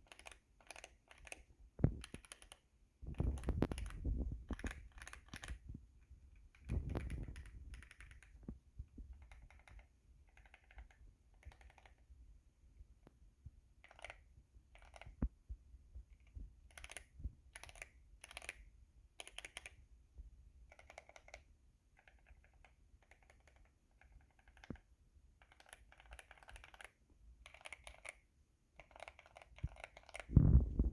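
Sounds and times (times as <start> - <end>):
mechanical keyboard typing: 0.0 - 5.6, 6.5 - 8.4, 9.1 - 12.1, 13.8 - 15.2, 16.7 - 18.6, 19.2 - 19.8, 20.7 - 21.4, 22.0 - 28.2, 28.8 - 30.3.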